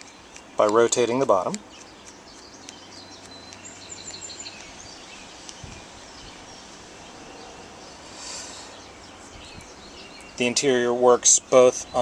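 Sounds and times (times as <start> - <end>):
high bird chirps: 1.6 - 10.7.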